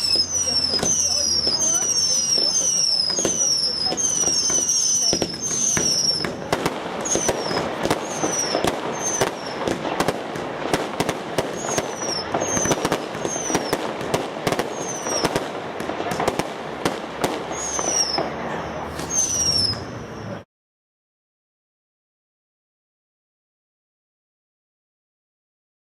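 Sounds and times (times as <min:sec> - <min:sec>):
falling firework whistles: 0:00.0 - 0:20.4
firework crackling and banging: 0:00.0 - 0:20.4.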